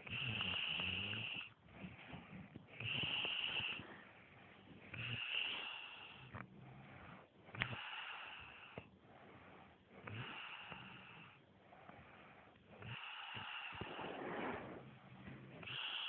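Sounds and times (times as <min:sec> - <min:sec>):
man snoring: 0:00.0 - 0:04.0, 0:04.8 - 0:08.8, 0:10.0 - 0:12.1, 0:12.8 - 0:15.0, 0:15.6 - 0:16.0.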